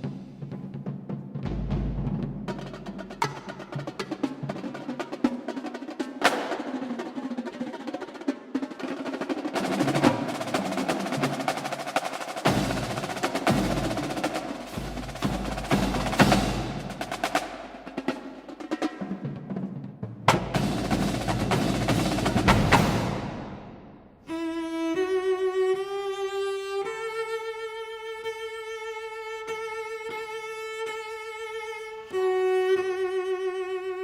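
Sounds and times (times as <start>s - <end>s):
quick sharp drum strikes: 0.0s - 6.9s, 9.2s - 24.1s.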